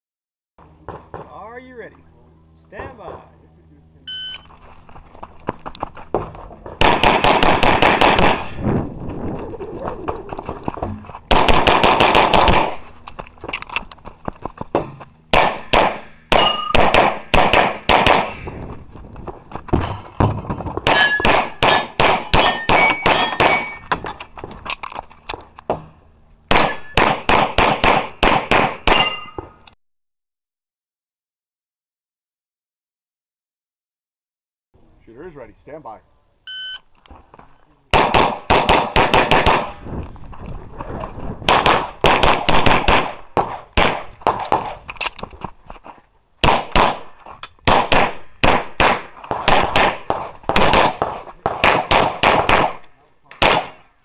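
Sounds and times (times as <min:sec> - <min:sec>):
pistol shots: 0:06.8 - 0:08.6, 0:11.3 - 0:12.8, 0:15.3 - 0:18.5, 0:20.8 - 0:23.8, 0:26.5 - 0:29.3, 0:37.9 - 0:39.8, 0:41.5 - 0:44.8, 0:46.4 - 0:53.9
steel targets ringing: 0:15.4 - 0:16.9, 0:20.9 - 0:23.9, 0:26.6 - 0:27.0, 0:28.9 - 0:29.6, 0:53.6 - 0:54.0.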